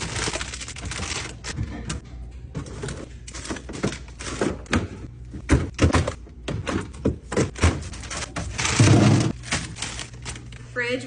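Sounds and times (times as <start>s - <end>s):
containers knocking on fridge shelves: 3.6s - 9.4s.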